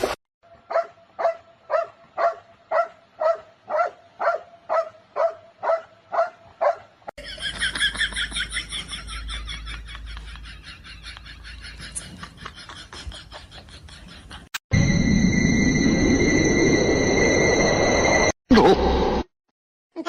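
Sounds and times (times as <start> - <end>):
dog barking: 0.7 - 6.9.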